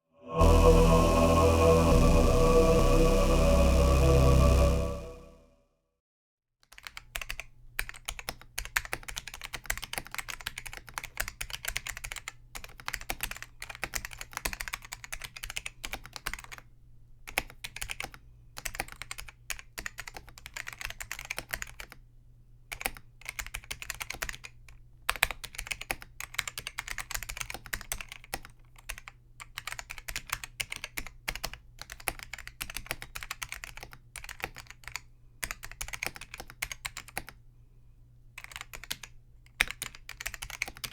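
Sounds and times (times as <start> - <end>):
mechanical keyboard typing: 6.7 - 16.7, 17.3 - 22.0, 22.7 - 37.4, 38.4 - 40.9.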